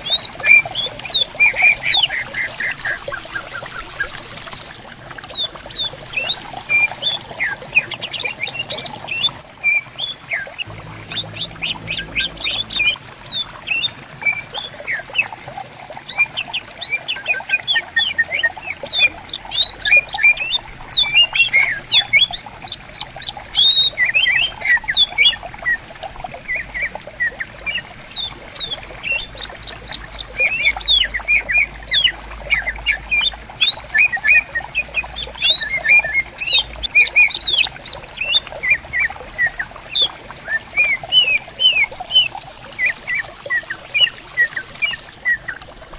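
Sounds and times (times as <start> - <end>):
stream trickling: 0.0 - 45.9
birds chirping and whistling: 17.6 - 22.4, 23.6 - 25.4, 30.3 - 38.4.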